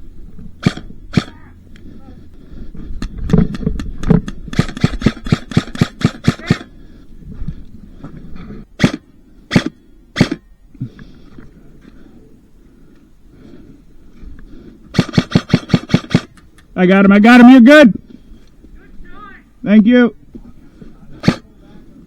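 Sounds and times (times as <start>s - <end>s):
airsoft gun shots: 0.6s - 1.5s, 3.0s - 6.7s, 8.8s - 10.4s, 14.9s - 16.4s, 21.2s - 21.5s.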